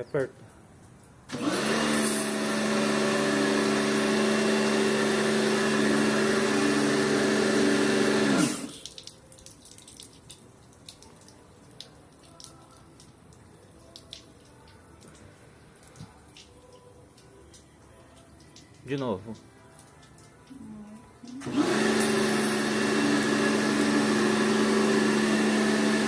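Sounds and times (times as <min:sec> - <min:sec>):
water dripping: 0:00.0 - 0:01.4, 0:08.6 - 0:21.5
pressure washer motor and pump: 0:01.3 - 0:08.9, 0:21.2 - 0:26.0.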